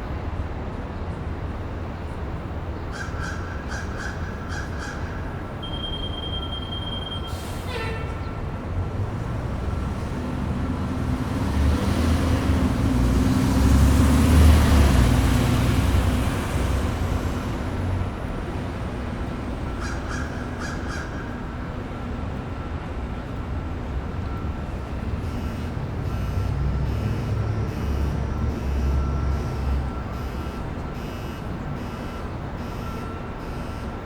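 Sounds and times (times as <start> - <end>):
traffic rumble: 0.0 - 34.0
vehicle passing close: 9.0 - 17.8.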